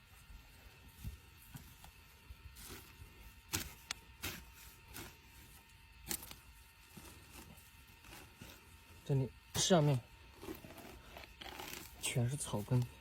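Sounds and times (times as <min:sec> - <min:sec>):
shovel thuds and scrapes in soil: 0:01.0 - 0:08.8.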